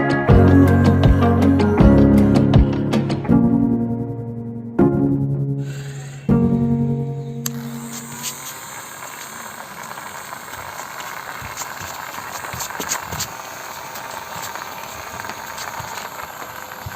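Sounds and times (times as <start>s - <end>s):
small motor whirring: 7.4s - 16.9s.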